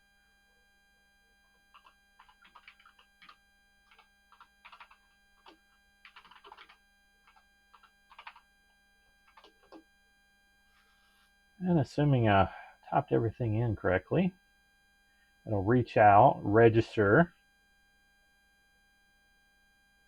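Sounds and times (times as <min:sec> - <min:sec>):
typing on computer keyboard: 0:01.7 - 0:08.4, 0:09.3 - 0:09.8.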